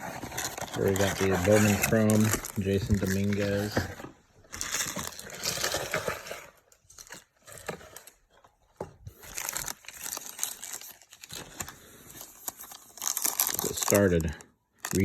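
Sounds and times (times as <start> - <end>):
card pack wrapper crinkling: 0.0 - 3.8, 4.5 - 6.3, 9.1 - 15.0.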